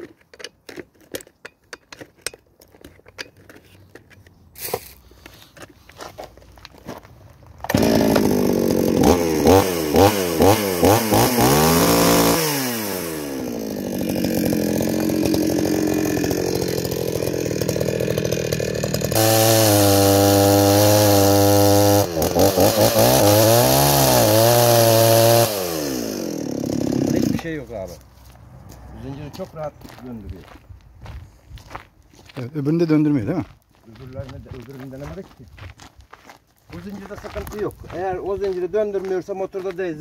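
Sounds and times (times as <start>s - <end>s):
chainsaw engine revving: 7.7s - 27.7s.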